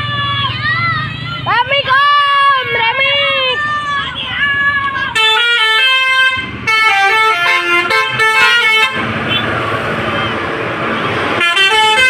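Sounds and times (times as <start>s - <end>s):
musical bus horns playing melody: 5.1s - 9.6s, 11.2s - 12.0s.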